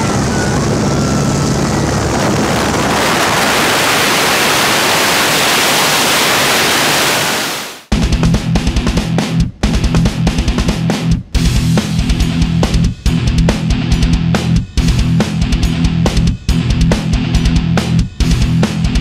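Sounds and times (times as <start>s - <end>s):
freefall wind rush on microphone: 0.0s - 7.9s
plane engine drone: 0.0s - 7.9s
wind rushing: 0.0s - 7.9s
heavy rock music with electric guitar: 7.9s - 19.0s.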